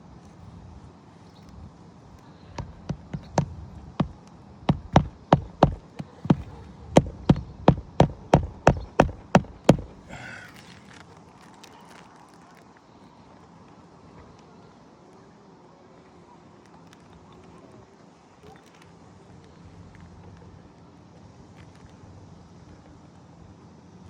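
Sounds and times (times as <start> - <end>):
hammer driving nails into shingles: 2.6 - 10.4.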